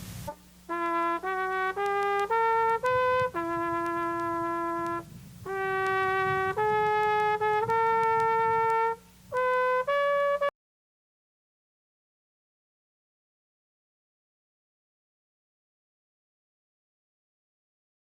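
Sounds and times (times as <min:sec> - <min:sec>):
solo trumpet melody: 0:00.0 - 0:10.5.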